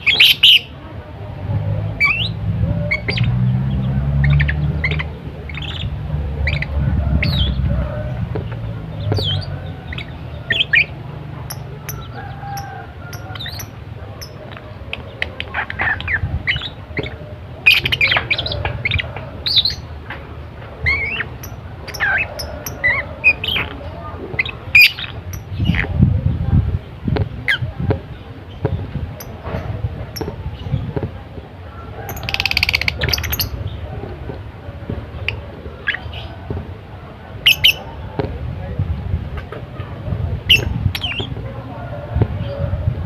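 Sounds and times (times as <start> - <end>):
lovebird chirping: 9.0 - 14.4.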